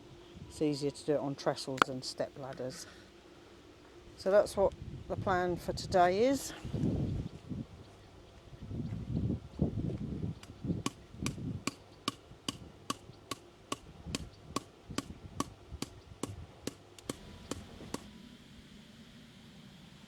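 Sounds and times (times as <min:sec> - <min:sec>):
hammer striking chisel on stone: 0:11.7 - 0:15.1.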